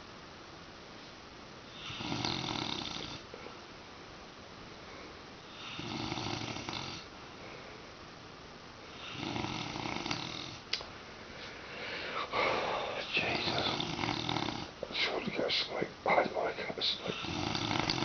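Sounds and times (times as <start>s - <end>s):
man snoring: 1.7s - 3.2s, 5.5s - 7.1s, 8.9s - 10.6s, 12.2s - 15.2s, 16.4s - 18.0s.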